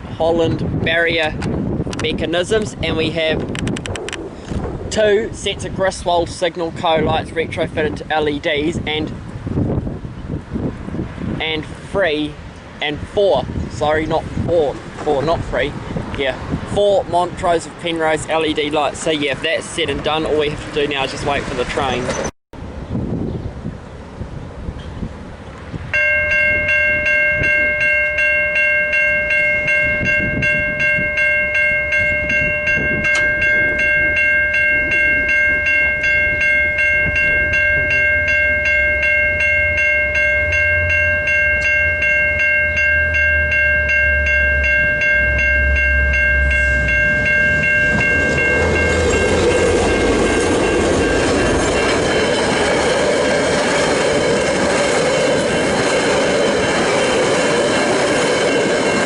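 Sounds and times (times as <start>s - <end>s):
train wheels rolling on rails: 1.4s - 6.0s, 14.1s - 22.3s, 27.4s - 59.0s
level crossing electronic bells: 26.0s - 52.7s.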